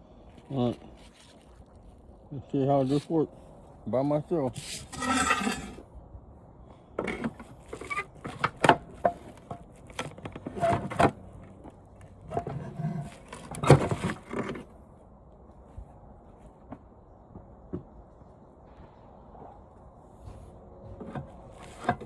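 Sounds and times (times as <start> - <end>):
knocks and scrapes of tv parts: 4.6 - 5.8, 7.0 - 14.7, 20.2 - 22.0.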